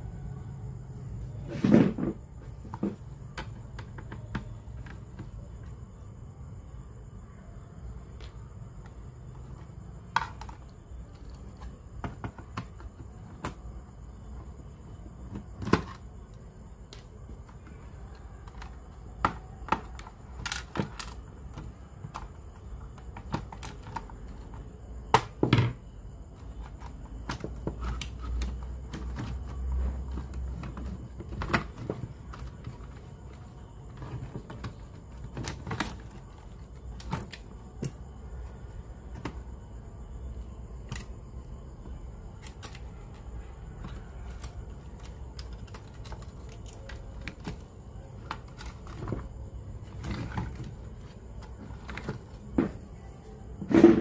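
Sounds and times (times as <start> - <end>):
faint high whine: 0.0 - 23.1
clicks and knocks of small parts: 16.9 - 25.8, 42.4 - 49.2.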